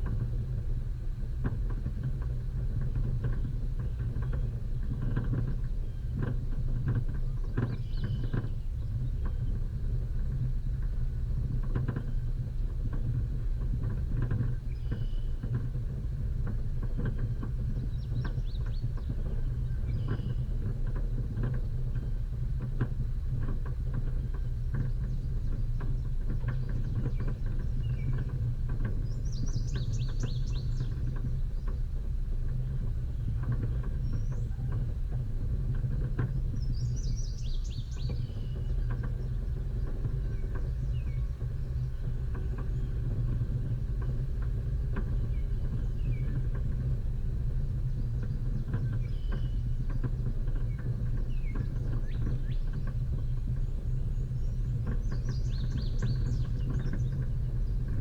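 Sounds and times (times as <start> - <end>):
knocks and rattles from bumps: 0.0 - 58.0
vehicle engine rumble: 0.0 - 58.0
birds chirping: 29.0 - 31.8, 36.4 - 43.2, 50.2 - 57.9.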